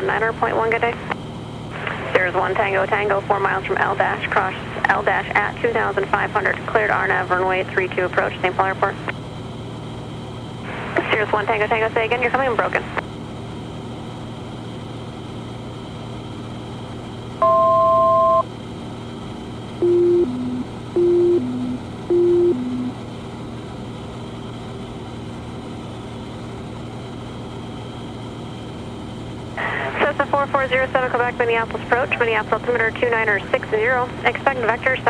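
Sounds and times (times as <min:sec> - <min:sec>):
airplane engine drone in cockpit: 0:00.0 - 0:35.0
falling two-note beeps: 0:19.8 - 0:23.0
two-pitch electronic tone: 0:19.8 - 0:23.0.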